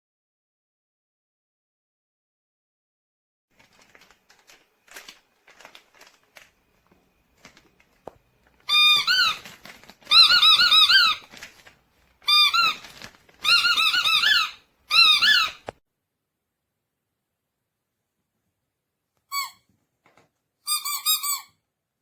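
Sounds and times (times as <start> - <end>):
faint clicking and handling: 3.5 - 13.8
squeaky dog toy squeaking: 8.6 - 11.4, 12.2 - 15.7, 19.3 - 19.7, 20.6 - 21.6.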